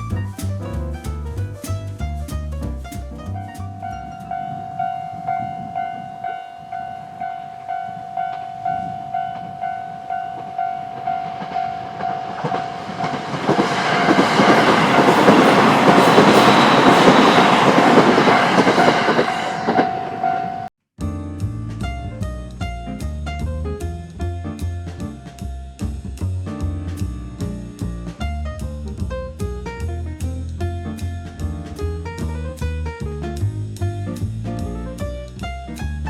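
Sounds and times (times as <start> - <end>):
train passing: 3.4 - 20.7
level crossing alarm tone: 3.8 - 13.2, 14.7 - 20.7.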